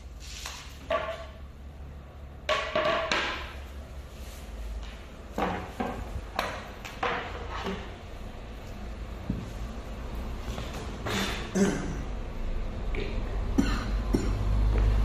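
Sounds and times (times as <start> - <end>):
wooden panels knocking and scraping: 0.4 - 1.4, 2.4 - 3.7, 4.8 - 8.1.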